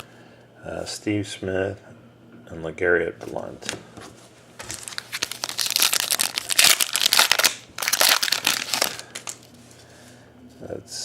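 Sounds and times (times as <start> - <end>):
wrapper crinkling: 4.6 - 9.6.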